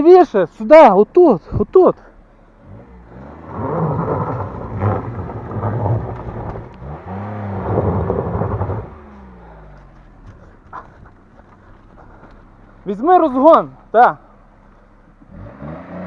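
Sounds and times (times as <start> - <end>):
spinning tyres on loose stones: 2.2 - 16.0
car engine revving hard: 2.6 - 9.7, 15.3 - 16.0.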